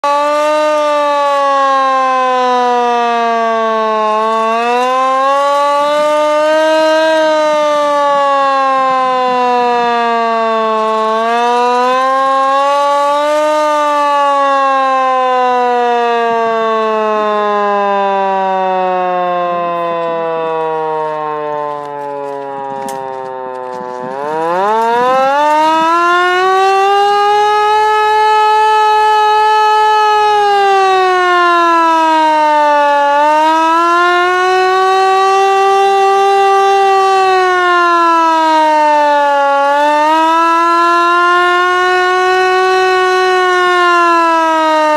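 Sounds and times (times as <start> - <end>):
hand-cranked siren wailing: 0.0 - 44.9.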